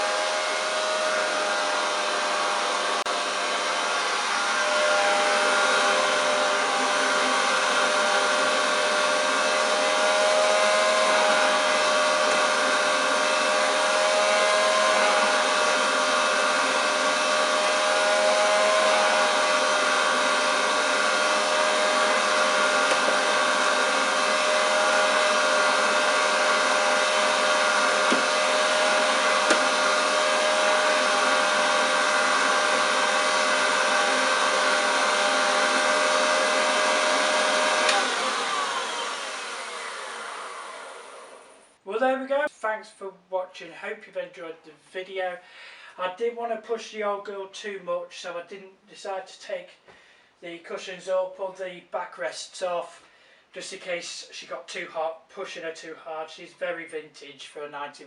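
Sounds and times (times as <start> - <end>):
vacuum cleaner motor whine: 0.0 - 41.8.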